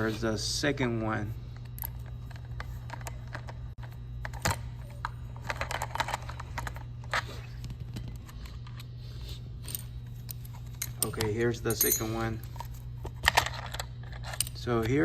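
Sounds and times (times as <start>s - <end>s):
steady low hum: 0.0s - 15.0s
metal parts clicking: 9.6s - 12.4s.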